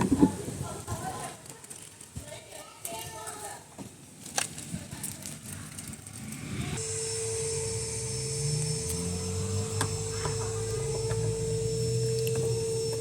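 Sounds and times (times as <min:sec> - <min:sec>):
washing machine running: 0:06.8 - 0:13.0.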